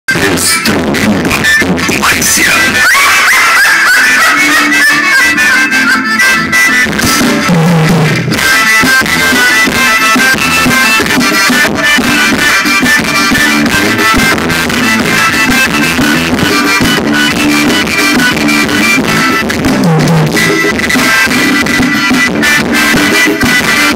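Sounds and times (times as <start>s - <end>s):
loud music from car stereo: 0.1s - 23.9s.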